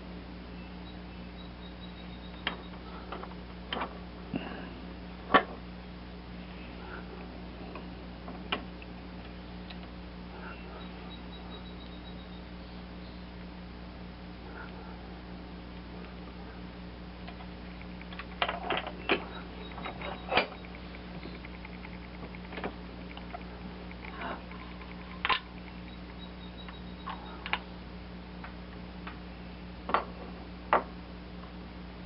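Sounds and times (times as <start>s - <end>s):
steady low hum: 0.0s - 32.0s
small parts and tools clicking: 17.3s - 27.7s.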